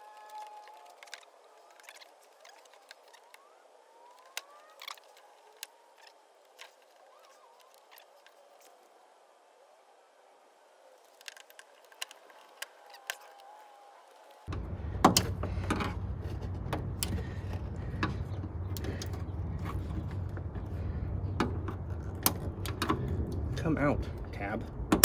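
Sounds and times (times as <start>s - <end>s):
steady low hum: 14.5s - 25.0s.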